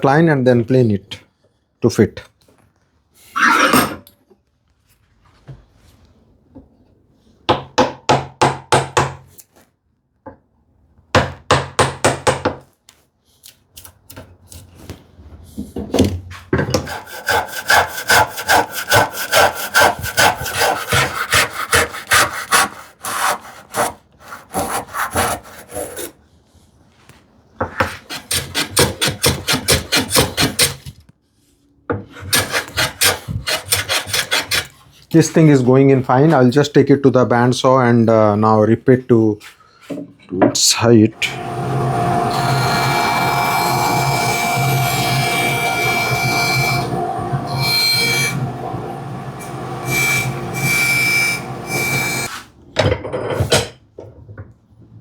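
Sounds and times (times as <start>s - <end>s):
hand saw cutting wood: 16.7s - 26.2s, 27.9s - 30.9s, 32.1s - 34.8s, 41.2s - 52.5s.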